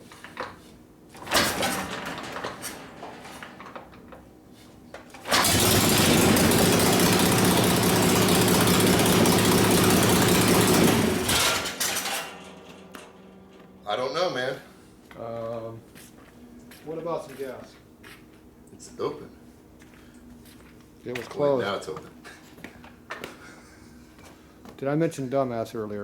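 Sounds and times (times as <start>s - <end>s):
engine knocking and clatter: 5.3s - 11.8s
motorcycle engine running: 5.3s - 12.1s.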